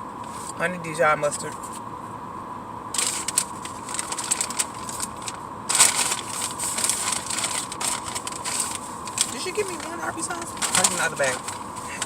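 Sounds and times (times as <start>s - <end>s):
paper bag rustling: 3.0s - 12.0s.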